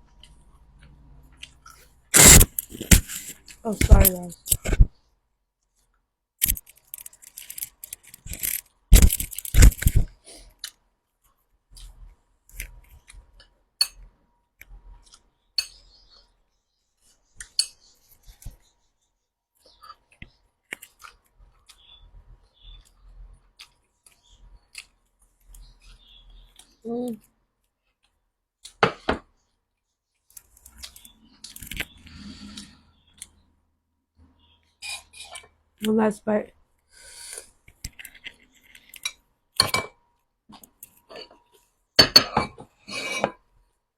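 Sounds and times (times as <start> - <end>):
crunchy chewing: 0.2 - 3.6.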